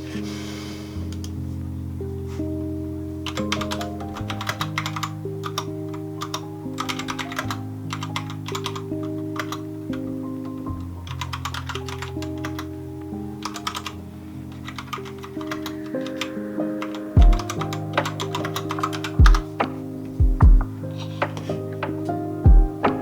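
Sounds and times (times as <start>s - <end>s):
soft music of held chords: 0.0s - 23.0s
mechanical keyboard typing: 3.3s - 9.7s, 13.4s - 14.0s, 14.6s - 19.5s.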